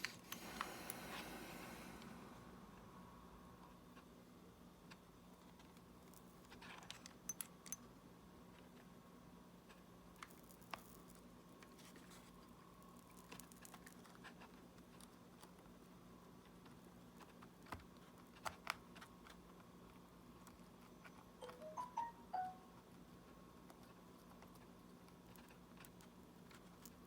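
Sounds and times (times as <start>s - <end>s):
short high chirps and ticks: 21.4s - 22.7s.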